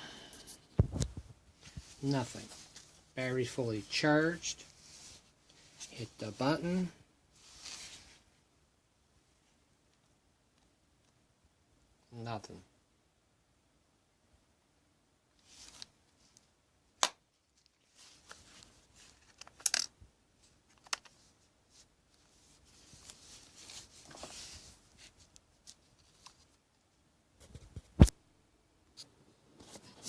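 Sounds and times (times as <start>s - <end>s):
soft rustling: 0.3s - 8.5s, 15.3s - 16.6s, 17.3s - 19.5s, 20.3s - 28.1s.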